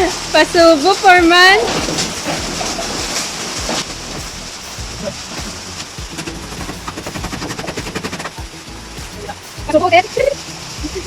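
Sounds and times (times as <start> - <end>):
rain falling: 0.0 - 11.0.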